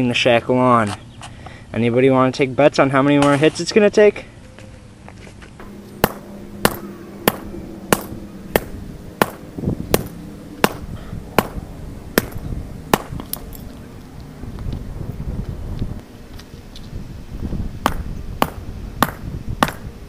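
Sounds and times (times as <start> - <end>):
sledgehammer blows on padlock: 5.6 - 11.6, 12.2 - 13.4, 17.8 - 19.9.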